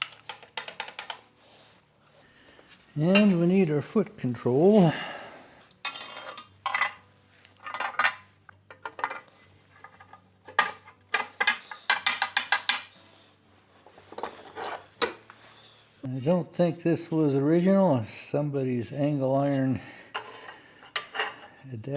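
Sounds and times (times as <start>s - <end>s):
metal parts clinking and clanking: 0.0s - 1.3s, 5.8s - 7.0s, 7.6s - 13.0s.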